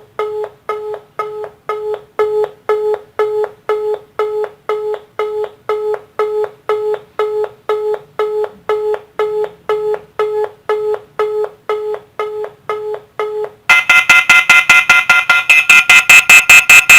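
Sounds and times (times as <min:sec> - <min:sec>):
high-pitched fast beeping tone: 0:13.7 - 0:16.9
telephone busy signal beeps: 0:13.7 - 0:16.9.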